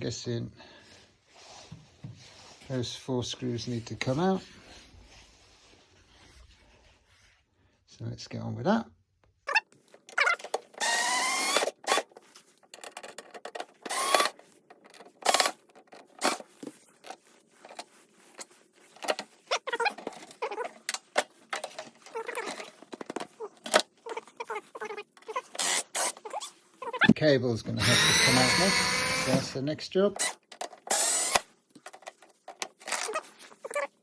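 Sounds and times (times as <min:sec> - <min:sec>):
screws and parts rattling: 0:09.9 - 0:26.5, 0:27.8 - 0:29.6
cordless electric screwdriver: 0:10.8 - 0:12.1, 0:13.9 - 0:14.4, 0:25.6 - 0:26.2, 0:27.8 - 0:29.6, 0:30.2 - 0:31.5.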